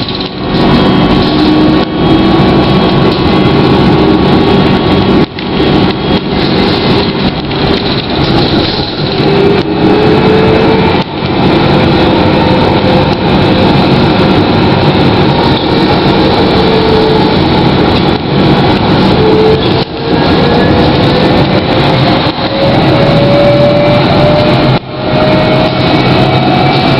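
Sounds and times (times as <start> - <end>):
tram running noise: 0.0 - 26.9.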